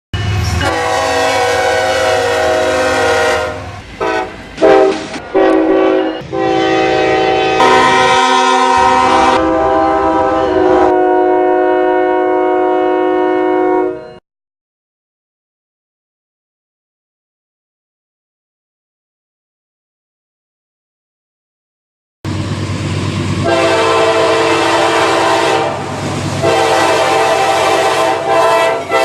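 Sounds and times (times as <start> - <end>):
locomotive air horn blasts: 0.2 - 14.2, 23.4 - 29.0.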